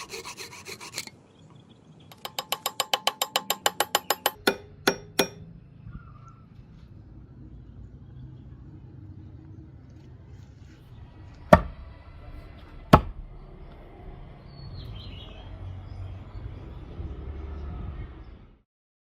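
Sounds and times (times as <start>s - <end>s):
low steady rumble: 4.4s - 18.1s.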